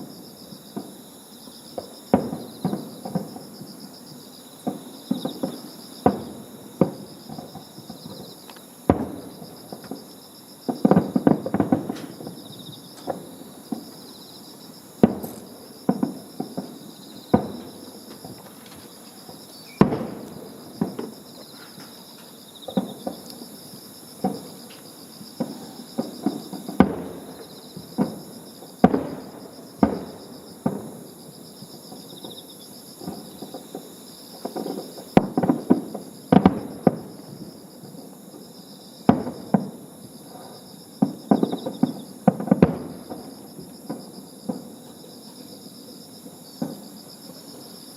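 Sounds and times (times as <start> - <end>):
firework shells booming: 1.8 - 3.8, 4.6 - 14.0, 15.0 - 22.0, 22.7 - 23.5, 24.2 - 24.8, 25.4 - 31.1, 34.4 - 37.4, 39.1 - 39.8, 41.0 - 44.7.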